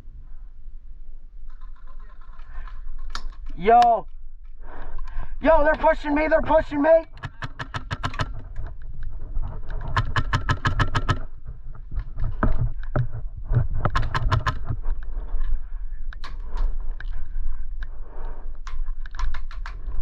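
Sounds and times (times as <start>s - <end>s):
airsoft guns firing: 7.1s - 8.4s, 10.0s - 11.4s.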